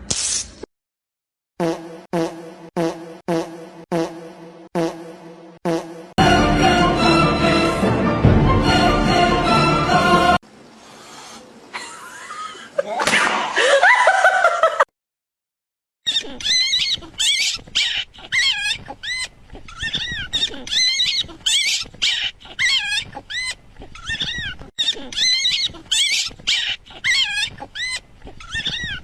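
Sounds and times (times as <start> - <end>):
small animal squeaking: 16.1 - 29.0.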